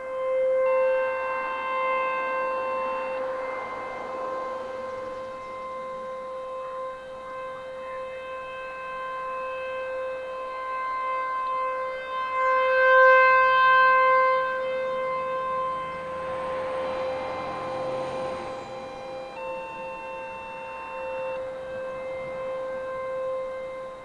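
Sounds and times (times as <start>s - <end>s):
warning siren: 0.0s - 24.0s
rushing noise: 1.0s - 7.7s, 14.8s - 22.9s.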